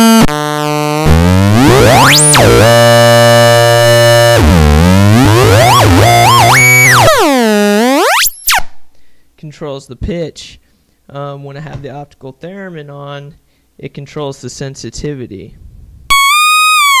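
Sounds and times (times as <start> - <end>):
electronic theremin tones swooping: 1.0 - 8.8, 16.1 - 17.0.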